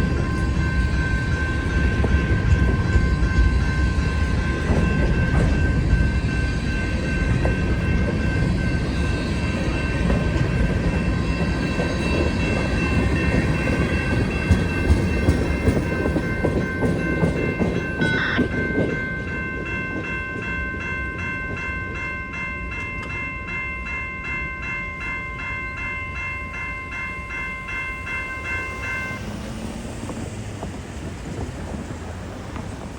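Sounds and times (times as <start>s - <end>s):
train wheels clickety-clack: 0.0s - 20.6s, 28.0s - 32.9s
high-pitched wheel squeal: 18.0s - 18.8s
loud screech: 18.0s - 18.8s.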